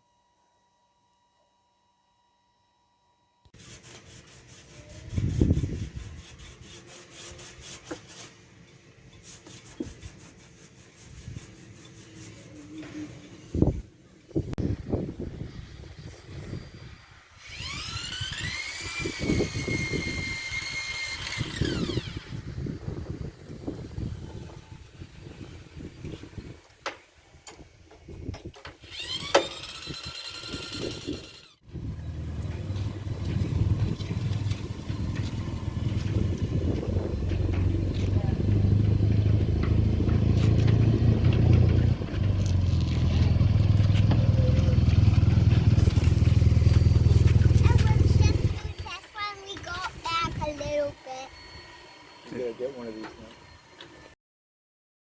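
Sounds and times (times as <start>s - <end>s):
motor running with low pulse: 15.2s - 26.6s, 28.8s - 48.8s
electric power tool whining: 15.5s - 27.0s, 28.1s - 54.2s
low rumble: 31.7s - 48.6s.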